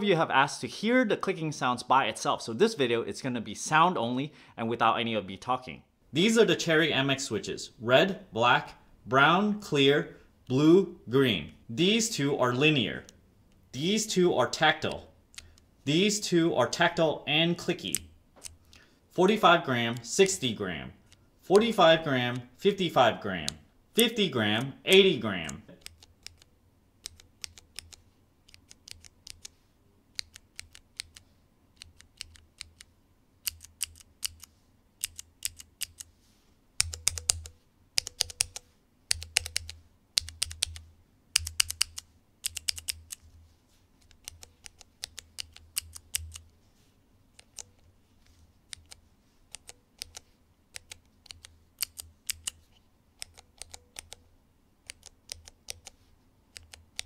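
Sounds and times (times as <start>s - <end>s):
mechanical keyboard key clicks: 25.5s - 29.6s, 30.2s - 31.2s, 31.8s - 36.1s, 36.8s - 40.8s, 41.4s - 43.2s, 48.7s - 52.6s, 53.2s - 54.2s, 54.8s - 57.0s.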